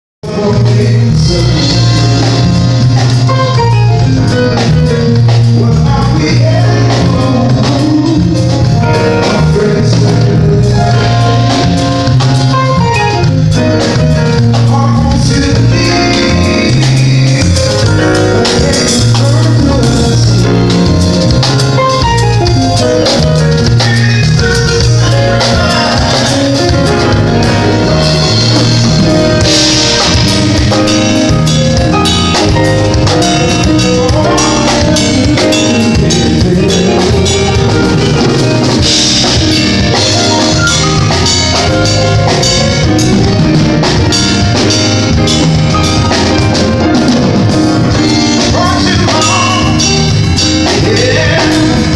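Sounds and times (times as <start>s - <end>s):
band playing: 0.2s - 51.9s
bass line: 0.2s - 51.9s
drum kit: 0.2s - 51.9s.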